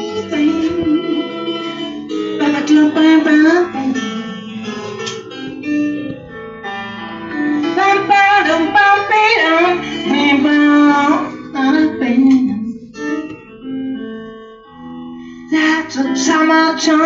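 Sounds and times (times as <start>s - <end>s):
person singing wordless vocals: 0.0s - 1.6s, 2.4s - 4.5s, 7.6s - 12.9s, 15.5s - 17.0s
plucked guitar: 0.0s - 17.0s.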